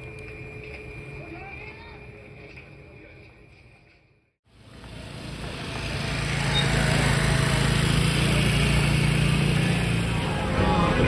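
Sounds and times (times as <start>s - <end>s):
road noise: 4.5s - 11.0s
vehicle engine running: 4.5s - 11.0s.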